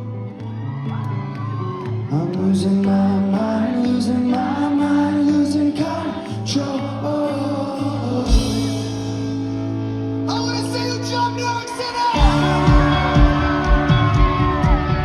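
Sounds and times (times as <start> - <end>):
rock band playing live: 8.2 - 15.0
person singing: 10.3 - 15.0.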